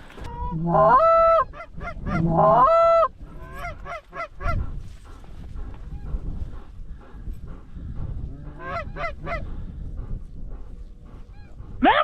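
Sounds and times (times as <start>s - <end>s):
goose clucking: 0.2s - 4.6s, 8.5s - 9.5s.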